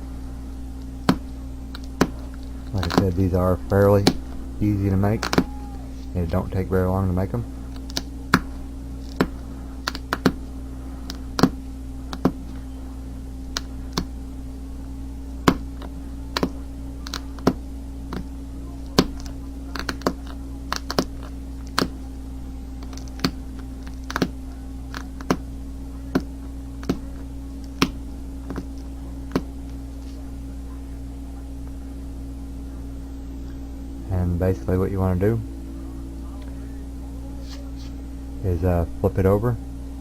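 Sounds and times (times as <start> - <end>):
low steady hum: 0.0 - 40.0
flint flakes clicking off: 0.8 - 6.4, 7.6 - 12.7, 13.5 - 14.2, 15.4 - 22.0, 22.8 - 25.5.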